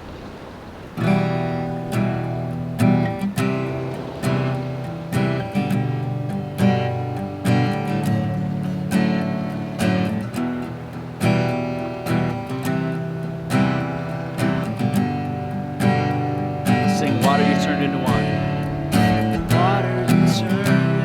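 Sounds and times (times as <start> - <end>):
acoustic guitar strumming chords: 0.9 - 21.0.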